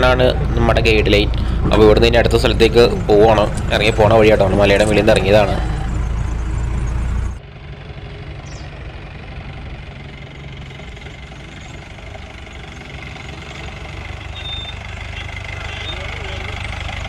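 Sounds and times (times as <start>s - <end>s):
loud low rumble: 0.0s - 13.1s
diesel engine idling: 0.0s - 17.0s.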